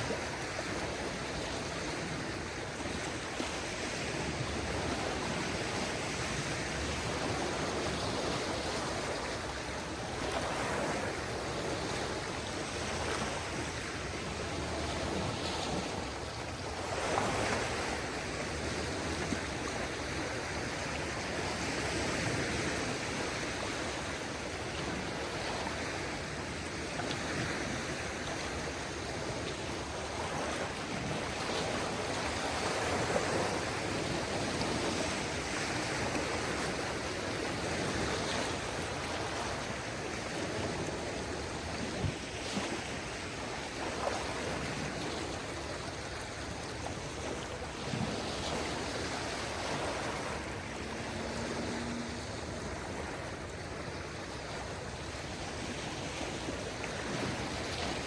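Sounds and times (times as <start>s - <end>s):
small waves washing on shore: 0.0s - 58.0s.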